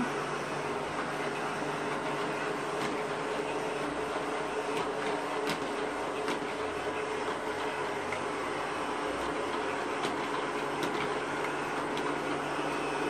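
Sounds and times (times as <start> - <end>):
robot vacuum cleaner whirring: 0.0 - 13.0.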